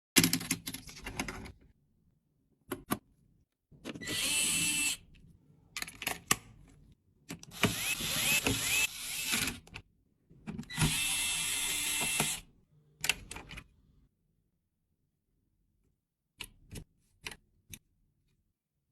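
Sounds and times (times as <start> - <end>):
electric screwdriver running: 4.1 - 5.0, 7.5 - 9.5, 10.8 - 12.4.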